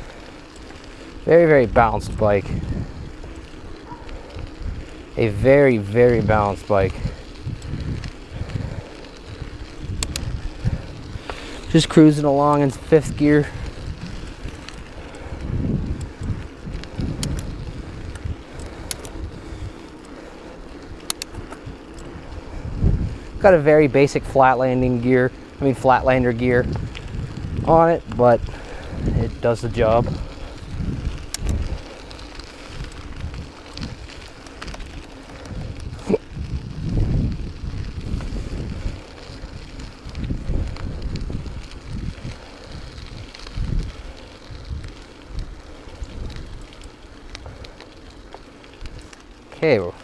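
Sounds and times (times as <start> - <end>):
wind rumbling on microphone: 0.0 - 50.0
sharp clicks: 9.3 - 11.5, 17.1 - 19.3, 20.8 - 22.2, 31.2 - 31.6.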